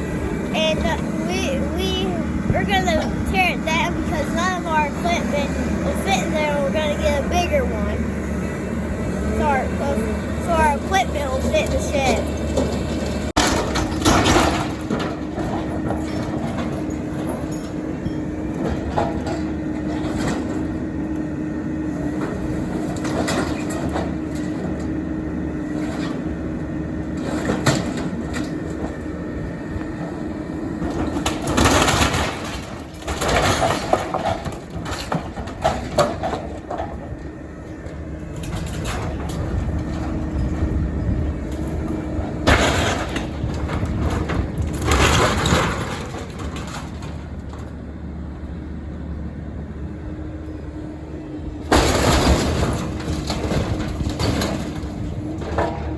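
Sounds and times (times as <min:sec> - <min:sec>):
excavator diesel engine under load: 0:00.0 - 0:55.9
loud crash: 0:51.7 - 0:54.8.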